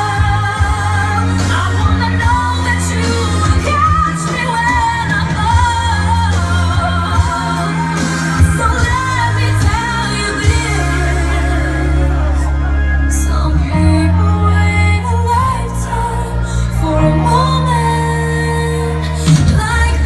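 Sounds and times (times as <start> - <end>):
person singing pop song: 0.0 - 20.0
steady bass notes: 0.0 - 20.0.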